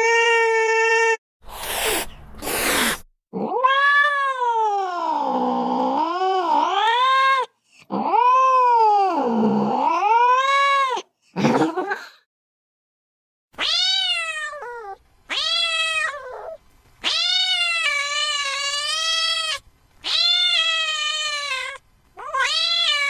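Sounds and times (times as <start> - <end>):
cat harsh cry: 0.0 - 5.5, 13.6 - 23.0
cat yowling: 0.0 - 11.0, 13.6 - 23.0
cat hissing: 1.4 - 4.0.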